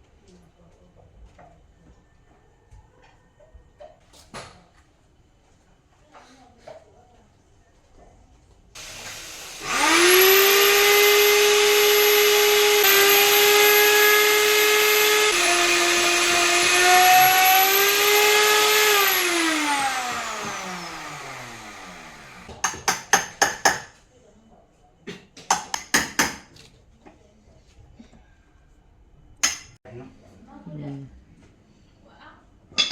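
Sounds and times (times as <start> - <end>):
power tool motor whining: 8.8 - 22.6
sharp knocks: 22.5 - 23.9, 25.5 - 26.5.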